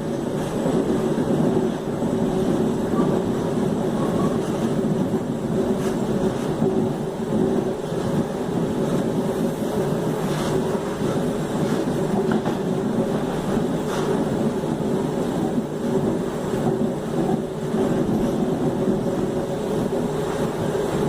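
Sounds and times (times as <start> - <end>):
electric train motors humming: 0.0 - 21.0
train running noise: 0.0 - 21.0.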